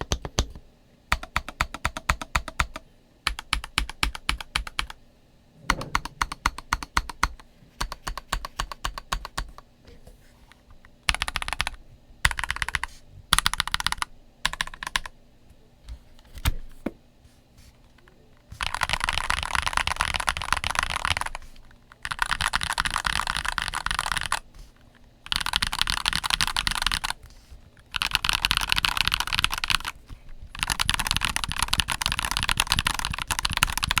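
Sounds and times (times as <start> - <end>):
mechanical keyboard typing: 0.0 - 5.0, 5.6 - 9.6, 11.0 - 15.1, 18.5 - 24.5, 25.2 - 27.2, 27.8 - 34.0.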